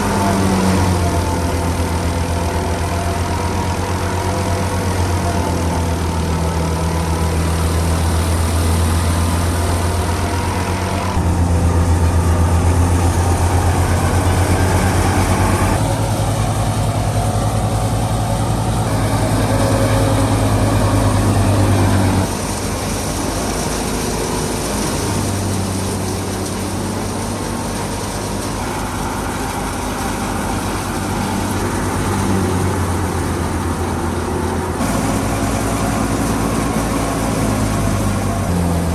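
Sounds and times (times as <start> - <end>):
thresher rushing noise: 0.0 - 38.9
tractor diesel engine under load: 0.0 - 38.9.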